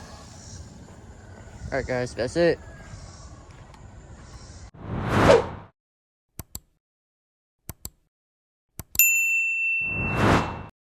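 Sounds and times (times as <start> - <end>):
whoosh: 4.8 - 5.7
bright bell-like ding: 9.0 - 10.2.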